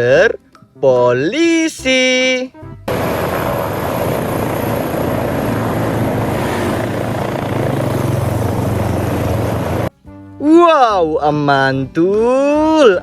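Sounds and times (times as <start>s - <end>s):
helicopter rotor chop: 2.9s - 9.9s.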